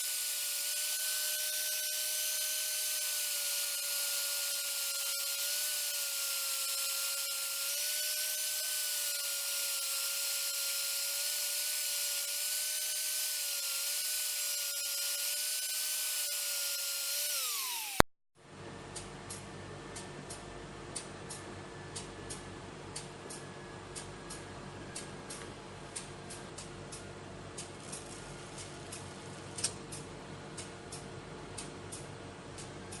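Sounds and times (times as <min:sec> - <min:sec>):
electric power tool whining: 0:00.0 - 0:18.1.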